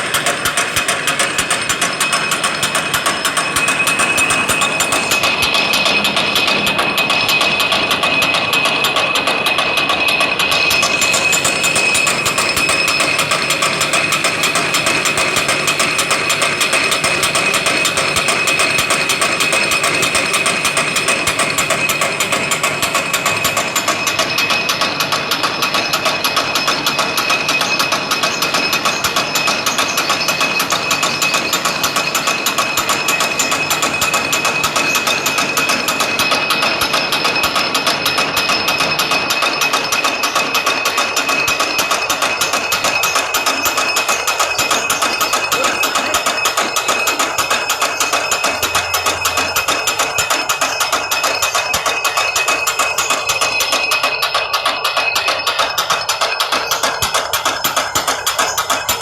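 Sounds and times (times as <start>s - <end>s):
constant high whine: 0.0s - 25.4s
machine mechanical clatter: 0.0s - 59.0s.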